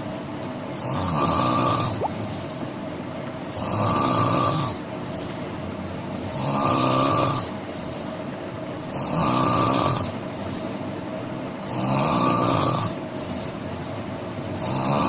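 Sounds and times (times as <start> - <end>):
person snoring: 14.6 - 15.0.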